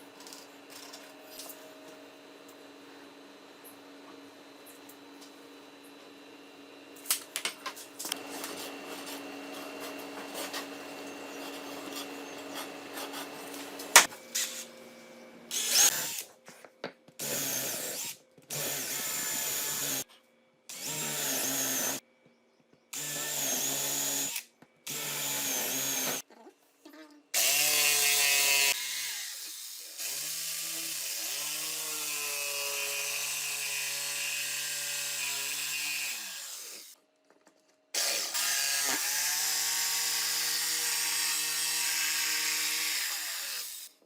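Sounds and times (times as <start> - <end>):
electric drill running: 15.5 - 16.3, 17.2 - 20.0, 20.7 - 22.0, 23.0 - 26.2, 27.4 - 37.0.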